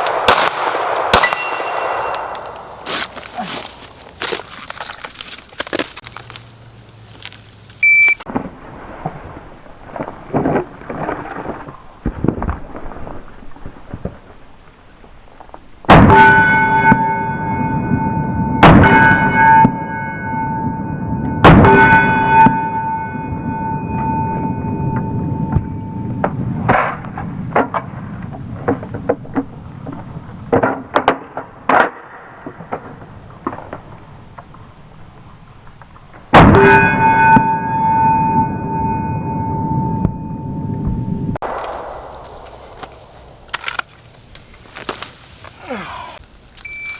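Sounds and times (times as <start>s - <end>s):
pistol shots: 0.0s - 2.8s, 41.4s - 43.8s
quieter sharp cracks: 0.0s - 9.1s, 41.4s - 46.3s
ringing tone: 1.2s - 2.8s, 16.2s - 26.2s, 36.6s - 42.1s.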